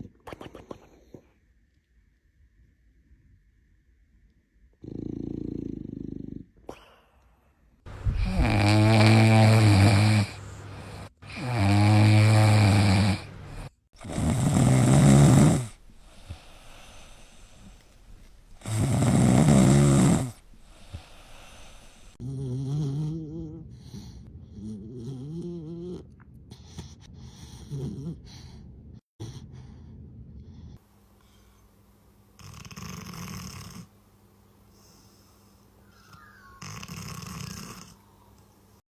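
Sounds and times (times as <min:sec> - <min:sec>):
dog snoring: 0:04.8 - 0:06.5, 0:08.1 - 0:28.5, 0:32.4 - 0:33.9, 0:34.7 - 0:38.0.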